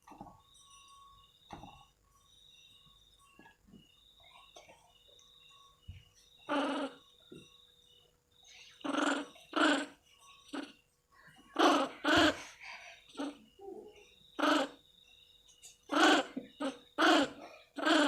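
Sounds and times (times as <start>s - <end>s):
faint steady high tone: 0.0s - 18.0s
monkey calls: 6.5s - 7.0s, 8.8s - 9.9s, 11.6s - 13.8s, 14.4s - 14.8s, 15.9s - 18.0s.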